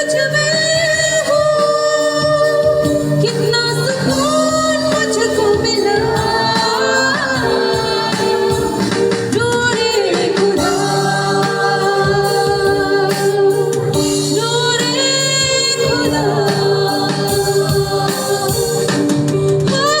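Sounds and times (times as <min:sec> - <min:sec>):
worship singing: 0:03.5 - 0:19.2.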